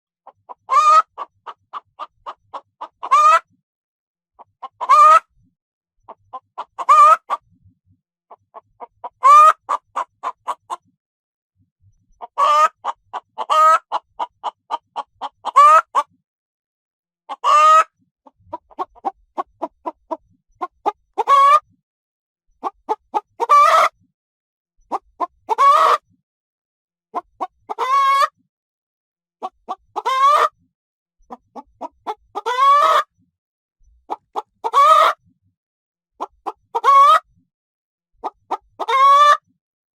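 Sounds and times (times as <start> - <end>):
hen cackling: 0.6 - 1.3, 2.8 - 3.4, 4.6 - 5.2, 6.6 - 7.4, 9.1 - 10.7, 12.2 - 14.0, 15.4 - 16.0, 17.3 - 17.9, 21.2 - 21.6, 22.6 - 23.9, 24.9 - 26.0, 27.4 - 28.3, 29.7 - 30.5, 32.0 - 33.1, 34.1 - 35.2, 36.2 - 37.2, 38.2 - 39.4.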